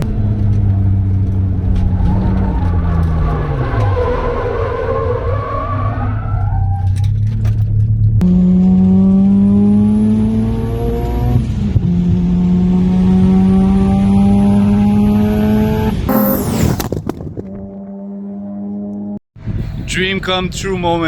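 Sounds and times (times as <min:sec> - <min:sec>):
rotary engine accelerating: 0:08.2 - 0:16.9
turbo whistle: 0:16.1 - 0:16.8
sudden loud burst: 0:16.1 - 0:17.1.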